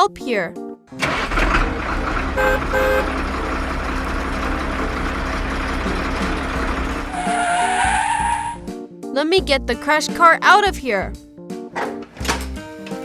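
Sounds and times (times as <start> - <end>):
truck engine running: 1.0 - 8.6
short horn beeps: 2.4 - 5.2
rising whine with hiss: 3.4 - 7.2.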